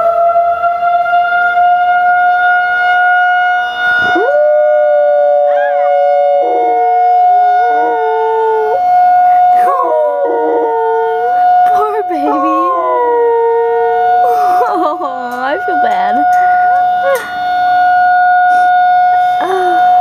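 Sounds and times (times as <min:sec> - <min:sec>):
tornado warning siren: 0:00.0 - 0:20.0
dog howling: 0:04.1 - 0:16.8.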